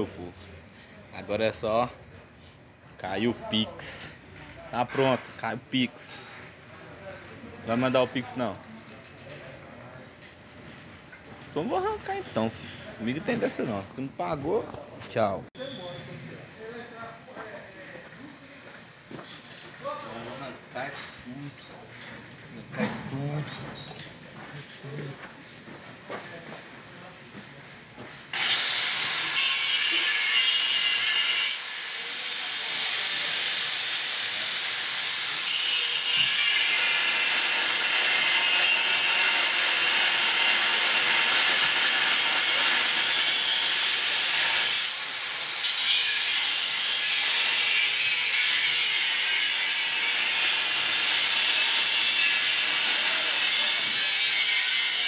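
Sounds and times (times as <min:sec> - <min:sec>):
tool grinding through metal: 0:28.3 - 0:55.0.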